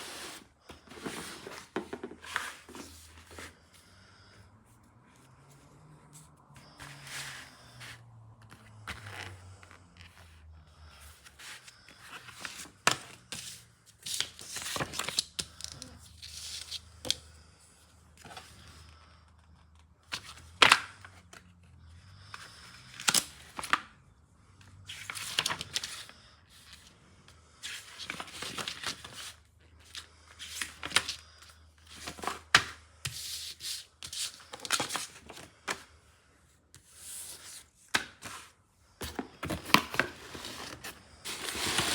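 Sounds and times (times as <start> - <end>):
tearing and rustling: 40.0 - 41.9.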